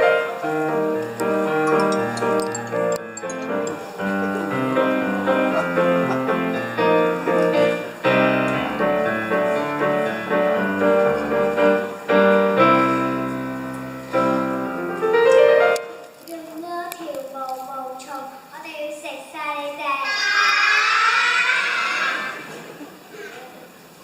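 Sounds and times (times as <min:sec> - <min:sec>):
piano music: 0:00.0 - 0:16.3.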